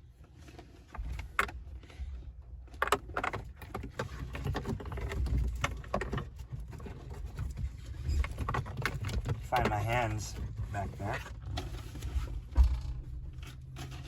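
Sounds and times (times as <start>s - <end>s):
low handling rumble: 9.4s - 14.0s.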